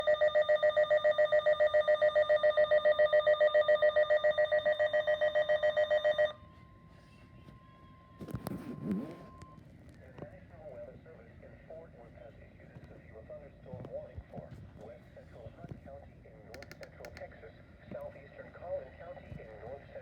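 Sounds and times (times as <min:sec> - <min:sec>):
faint steady tone: 0:00.0 - 0:09.6.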